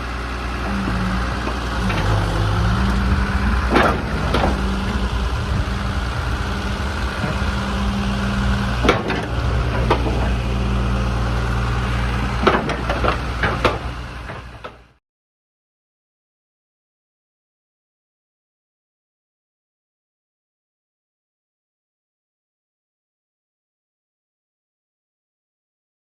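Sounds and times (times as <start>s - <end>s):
excavator diesel engine running: 0.0s - 15.0s
sharp metallic knocks: 0.7s - 5.6s, 6.4s - 10.4s, 12.2s - 14.8s.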